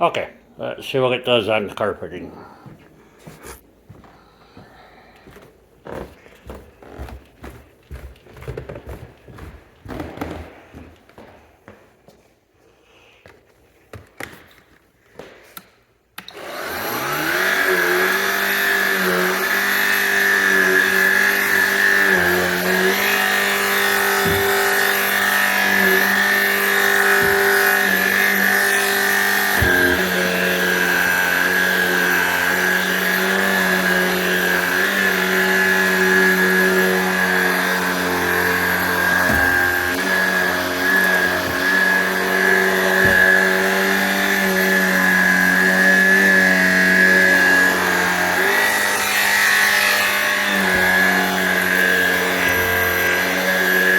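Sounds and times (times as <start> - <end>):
stick vacuum motor whining: 15.6 - 53.9.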